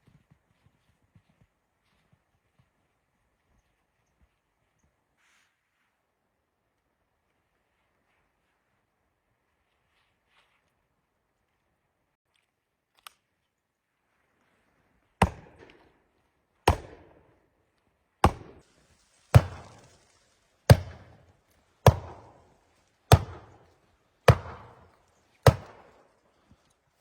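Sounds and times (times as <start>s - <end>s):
hard chopping strikes: 15.2s - 15.7s, 16.7s - 17.1s, 18.2s - 18.6s, 19.3s - 20.0s, 20.7s - 21.2s, 21.8s - 22.5s, 23.1s - 26.0s.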